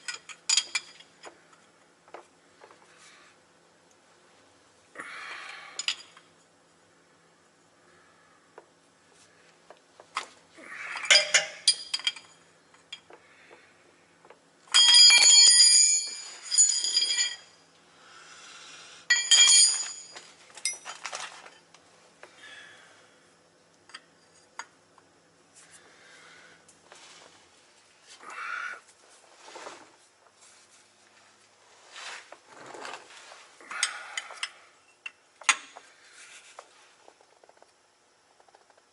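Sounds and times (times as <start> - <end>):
metal tools clinking: 0.0 - 1.4, 11.0 - 13.1, 14.7 - 17.5, 19.1 - 21.7
bright metallic ringing: 14.7 - 17.6, 19.1 - 20.3.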